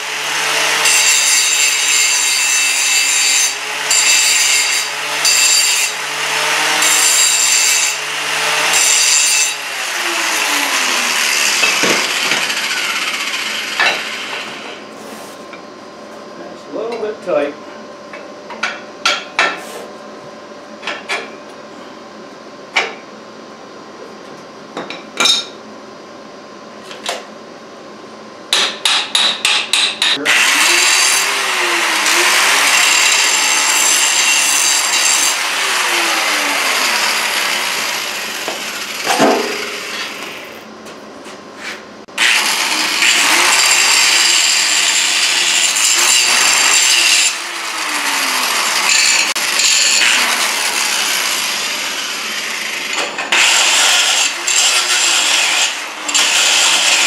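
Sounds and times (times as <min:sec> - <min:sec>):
power tool on metal: 0:00.0 - 0:14.8, 0:29.7 - 0:40.6, 0:42.1 - 0:57.0.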